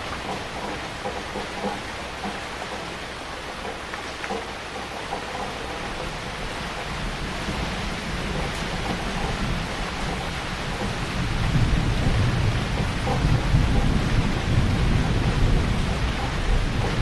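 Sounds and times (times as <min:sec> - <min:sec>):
heavy rain falling: 0:00.0 - 0:17.0
thunder rumbling: 0:05.8 - 0:17.0.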